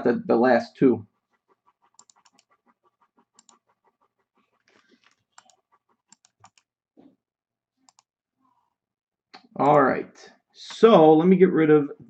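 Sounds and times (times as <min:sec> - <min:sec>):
typing on computer keyboard: 0:02.0 - 0:02.5, 0:05.0 - 0:06.6.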